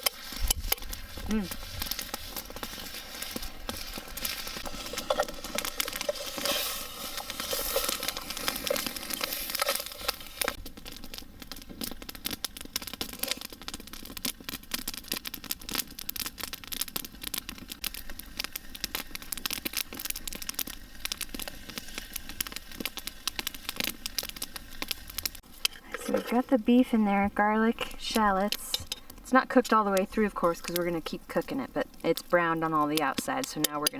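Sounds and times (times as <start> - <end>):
meat sizzling with pops and crackles: 0.0 - 33.9.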